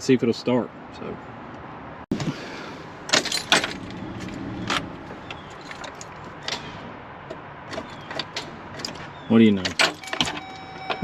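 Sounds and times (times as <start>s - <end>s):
sharp clicks and light knocks: 3.1s - 11.0s.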